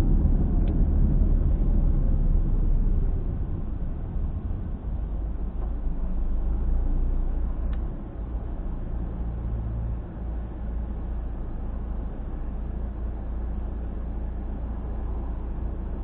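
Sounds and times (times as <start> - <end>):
car driving rumble: 0.0 - 16.0.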